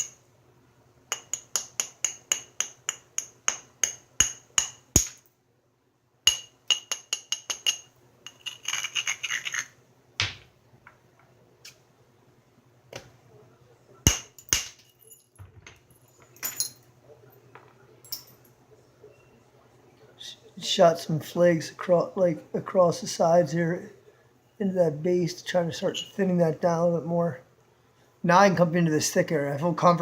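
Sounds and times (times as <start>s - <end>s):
hammer stone tapping on stone: 1.1s - 5.2s
stone scraping: 8.3s - 9.8s.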